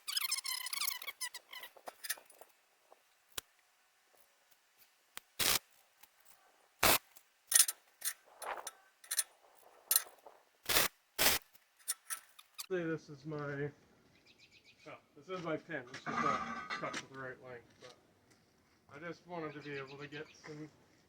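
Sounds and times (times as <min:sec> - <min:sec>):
clicks and knocks of objects handled: 0:07.1 - 0:10.4, 0:11.5 - 0:12.7.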